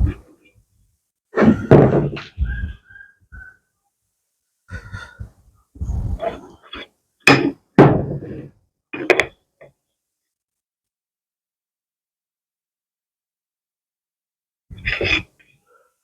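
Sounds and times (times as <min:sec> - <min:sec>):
objects knocking and thudding: 0:01.4 - 0:02.8, 0:07.3 - 0:09.4.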